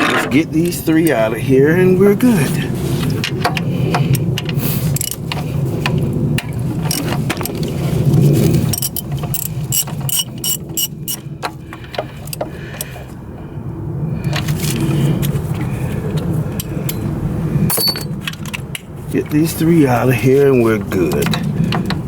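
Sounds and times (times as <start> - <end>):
steady low hum: 0.0 - 22.0
ratchet wrench clicking: 8.7 - 11.2.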